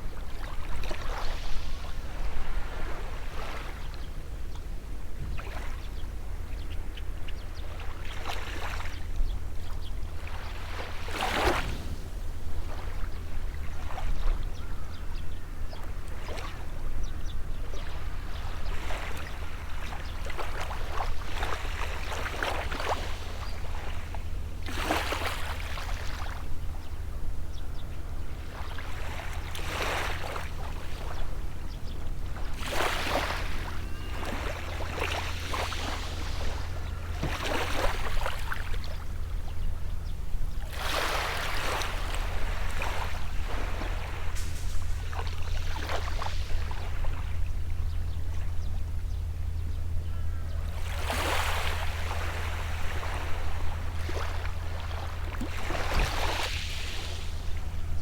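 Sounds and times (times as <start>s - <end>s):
waves breaking on shore: 0.2s - 3.9s, 10.1s - 14.5s, 17.7s - 27.1s, 28.4s - 48.4s, 50.7s - 58.0s
low hum: 9.0s - 58.0s.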